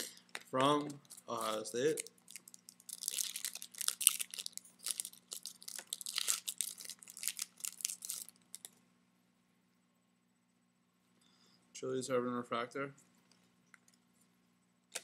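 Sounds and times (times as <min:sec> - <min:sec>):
foil wrapper tearing and crinkling: 0:00.0 - 0:08.7.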